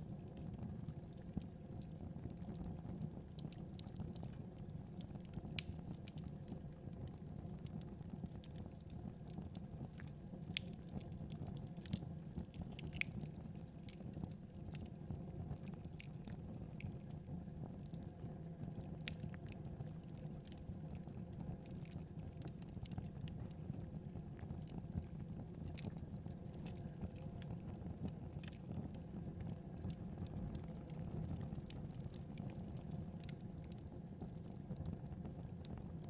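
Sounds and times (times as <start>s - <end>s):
wood fire crackling: 5.0s - 17.0s, 24.4s - 36.0s.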